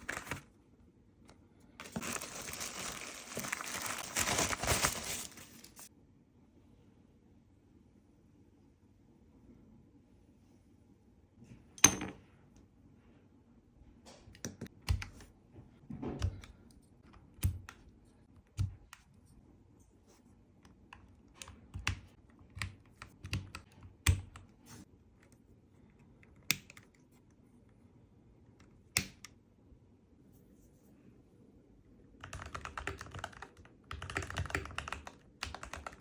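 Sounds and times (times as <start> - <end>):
mechanical keyboard clacking: 32.2 - 36.0.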